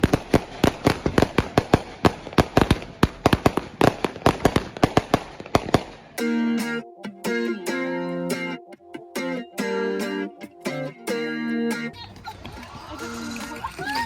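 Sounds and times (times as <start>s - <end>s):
firecrackers going off: 0.0s - 6.2s.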